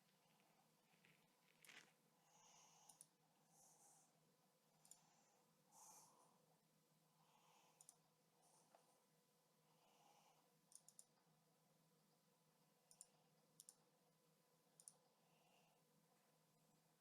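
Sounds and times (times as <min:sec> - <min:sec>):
computer mouse clicks: 0:02.9 - 0:03.2, 0:04.8 - 0:05.0, 0:07.8 - 0:08.0, 0:10.7 - 0:11.2, 0:12.9 - 0:13.8, 0:14.8 - 0:15.1.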